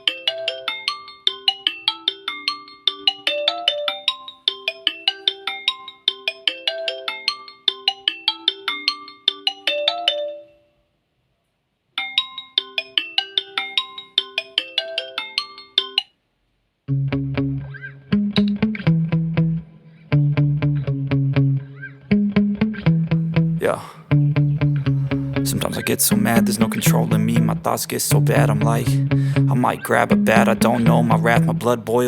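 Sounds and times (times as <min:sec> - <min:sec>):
marimba-like ringtone melody: 0:00.0 - 0:10.7, 0:12.0 - 0:16.2, 0:24.1 - 0:32.0.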